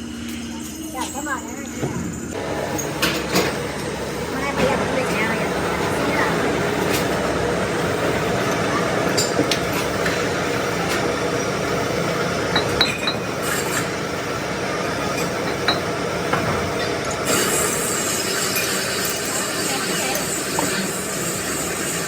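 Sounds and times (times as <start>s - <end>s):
workshop noise: 0.0s - 22.0s.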